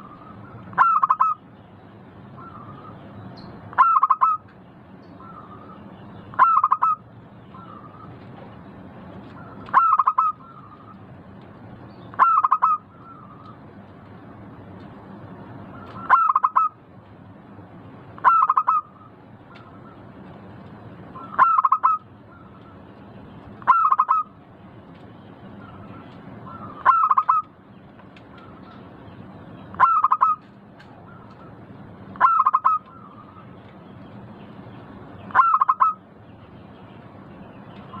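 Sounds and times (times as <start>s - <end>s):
dove cooing: 6.4s - 7.0s, 9.7s - 10.8s, 25.7s - 27.5s, 29.8s - 30.4s, 32.2s - 33.4s, 35.3s - 36.0s.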